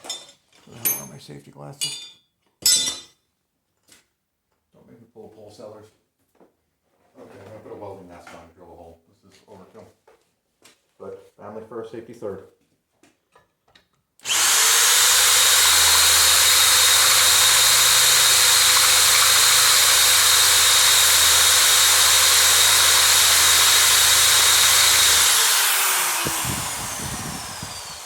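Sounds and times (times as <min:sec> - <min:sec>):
electric drill boring hole: 0:14.2 - 0:28.0.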